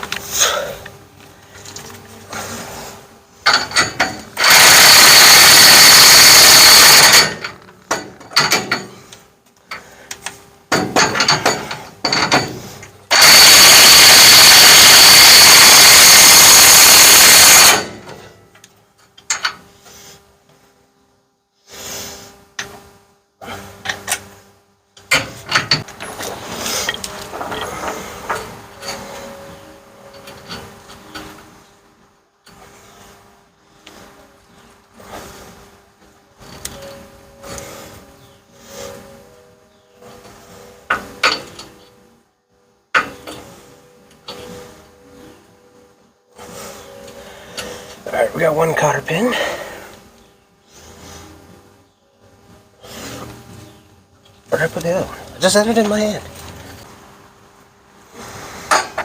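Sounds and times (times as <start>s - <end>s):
tools clanking and knocking: 3.4s - 4.6s, 6.8s - 9.1s, 10.7s - 13.3s, 25.0s - 29.3s
power tool running: 3.5s - 8.0s, 13.1s - 18.1s.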